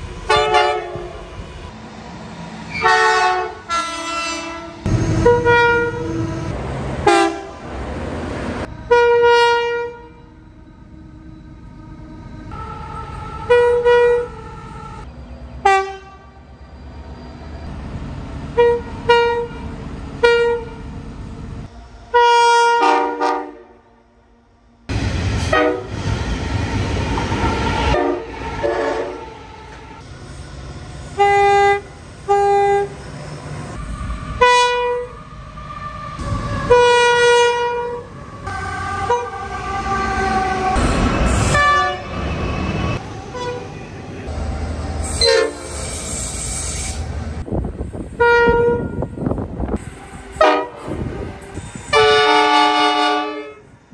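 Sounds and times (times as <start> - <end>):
moving trains rumbling: 0.0 - 53.9
train air horn blasts: 0.3 - 1.2, 2.7 - 7.6, 8.6 - 10.3, 12.5 - 15.0, 15.6 - 16.4, 18.5 - 20.8, 22.1 - 24.0, 25.4 - 26.0, 27.9 - 29.4, 31.1 - 33.0, 34.4 - 35.2, 36.2 - 42.2, 43.3 - 43.7, 45.0 - 47.1, 48.0 - 53.8.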